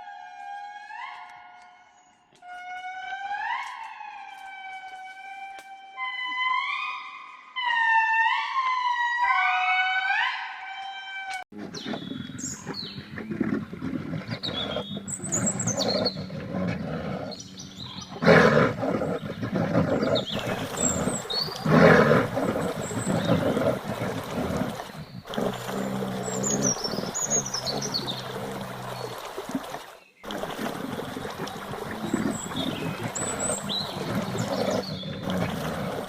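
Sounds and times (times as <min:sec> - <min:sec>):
large animal rough calls: 0:11.5 - 0:36.0.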